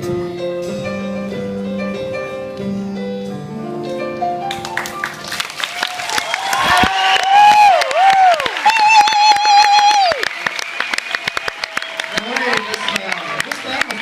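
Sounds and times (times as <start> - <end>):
piano and strings: 0.0 - 6.6
audience applause: 4.5 - 14.0
audience shouts and whoops: 5.6 - 13.9.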